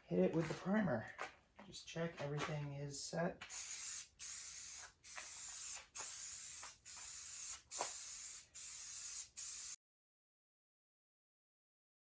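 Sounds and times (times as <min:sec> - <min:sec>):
spray nozzle hissing: 0:03.5 - 0:09.8.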